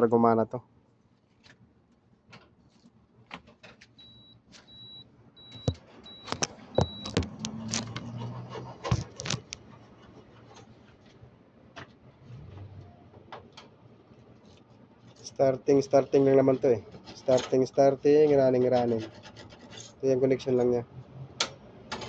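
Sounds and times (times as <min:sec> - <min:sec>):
short high beeps: 0:04.0 - 0:07.2
wires and clips clicking: 0:06.3 - 0:08.2, 0:08.8 - 0:09.6.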